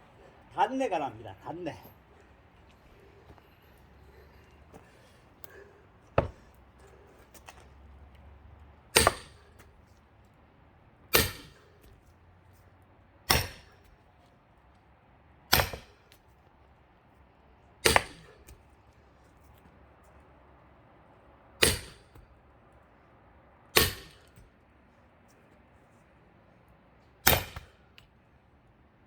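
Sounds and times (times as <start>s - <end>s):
axe blows splitting log: 17.8s - 18.4s, 21.6s - 22.0s, 23.8s - 24.2s, 27.3s - 27.7s.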